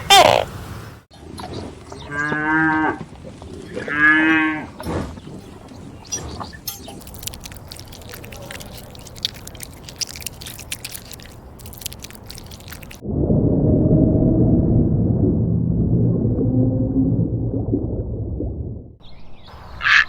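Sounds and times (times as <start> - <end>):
faint clicks and crackles: 1.1 - 13.0
cow mooing: 1.4 - 5.4.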